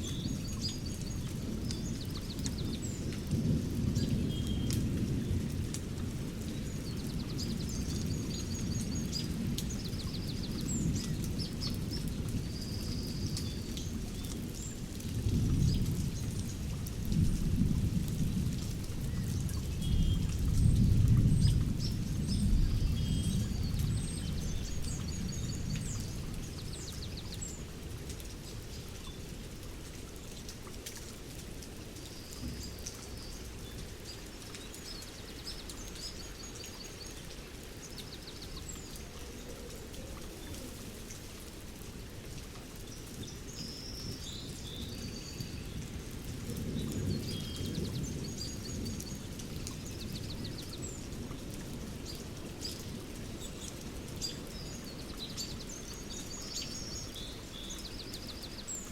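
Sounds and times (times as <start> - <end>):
small birds chirping: 0.0 - 5.3, 19.0 - 29.5, 31.9 - 41.7, 42.9 - 58.9
distant thunder rumbling: 15.1 - 27.8.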